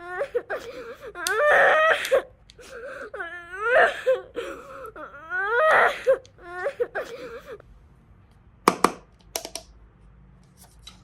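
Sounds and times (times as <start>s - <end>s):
child crying: 0.0s - 7.6s.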